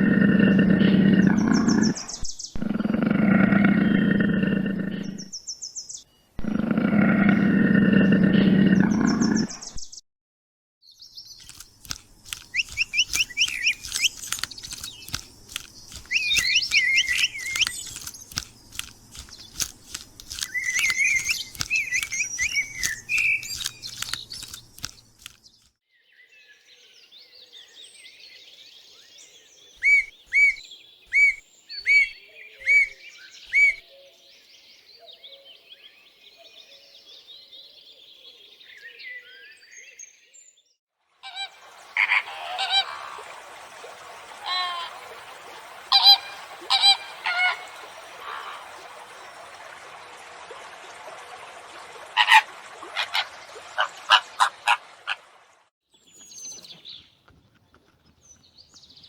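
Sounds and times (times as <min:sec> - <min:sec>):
birds chirping and calling: 0:00.6 - 0:05.4, 0:11.3 - 0:25.6, 0:29.7 - 0:34.0, 0:52.2 - 0:55.2
loud bird call notes: 0:11.4 - 0:25.3, 0:29.8 - 0:33.8, 0:45.9 - 0:48.9, 0:52.2 - 0:55.2
sharp clicks: 0:11.4 - 0:25.7.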